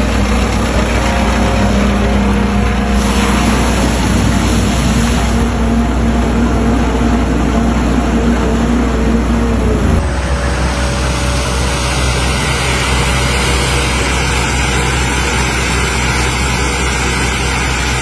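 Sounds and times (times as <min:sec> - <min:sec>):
excavator diesel engine rumbling: 0:00.0 - 0:18.0
tone falling in pitch: 0:09.7 - 0:16.3.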